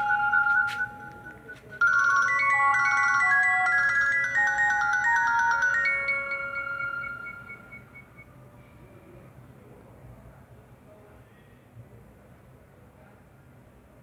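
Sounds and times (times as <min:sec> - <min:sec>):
ringtone melody: 0:00.0 - 0:08.4.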